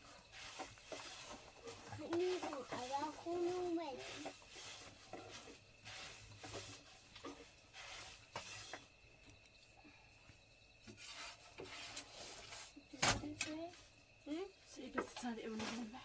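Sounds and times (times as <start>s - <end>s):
faint taps and rustles: 14.8s - 16.0s.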